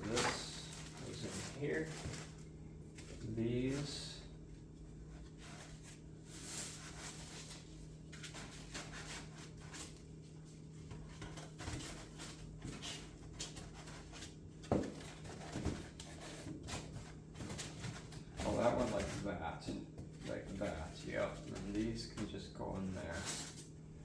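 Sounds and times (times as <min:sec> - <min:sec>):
packaging rustling: 0:00.0 - 0:02.4
steady low hum: 0:00.0 - 0:24.0.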